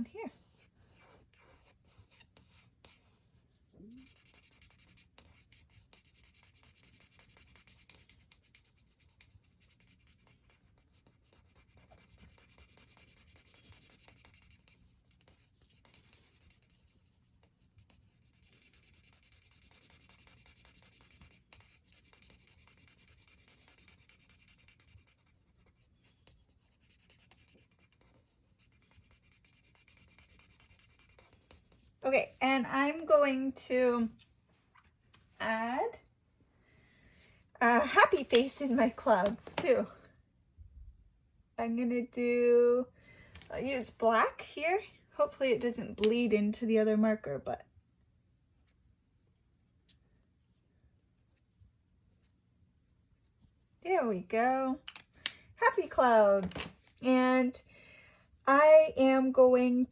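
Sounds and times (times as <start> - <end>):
marker rubbing on paper: 0.1 - 32.6.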